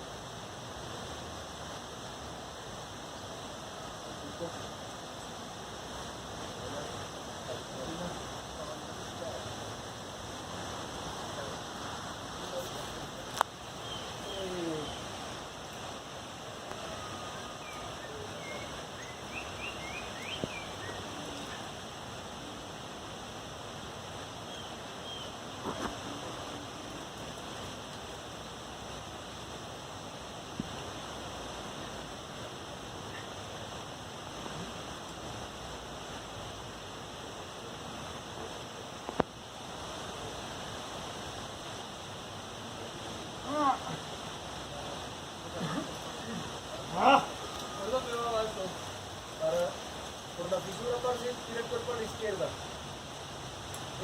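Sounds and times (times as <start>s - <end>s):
steady rushing hiss: 0.0s - 54.0s
bird chirps: 17.0s - 21.6s.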